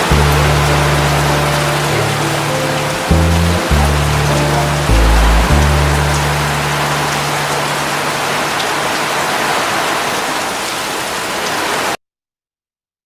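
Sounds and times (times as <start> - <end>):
low music notes: 0.0 - 9.4
heavy rain falling: 0.0 - 12.0.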